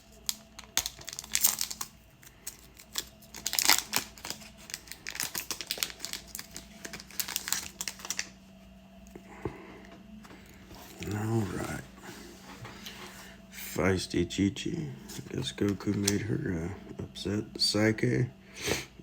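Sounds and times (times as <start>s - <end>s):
foil wrapper crinkling: 0.0s - 8.4s.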